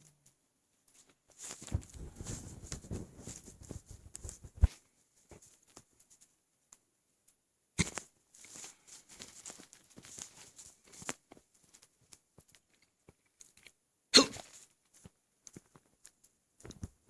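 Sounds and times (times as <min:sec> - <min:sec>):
stomach gurgling and crackling: 0:01.5 - 0:05.4, 0:07.8 - 0:17.0
hiccup: 0:14.1 - 0:14.5.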